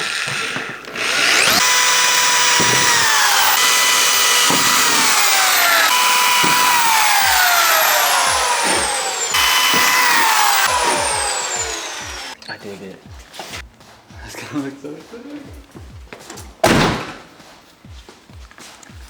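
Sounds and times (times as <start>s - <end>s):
power tool whining on metal: 0.0s - 12.4s.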